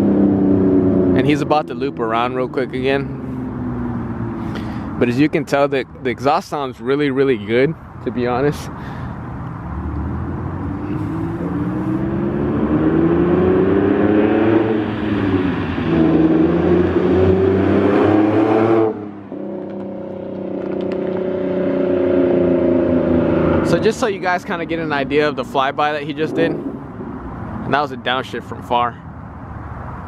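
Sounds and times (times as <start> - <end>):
car engine accelerating past: 9.6 - 23.9.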